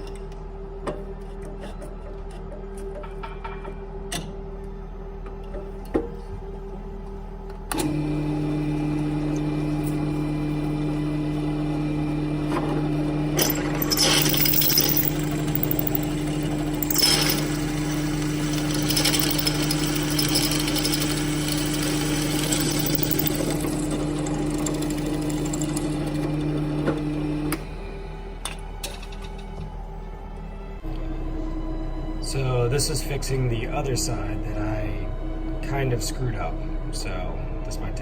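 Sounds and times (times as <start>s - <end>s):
electric power tool running: 13.0s - 27.7s.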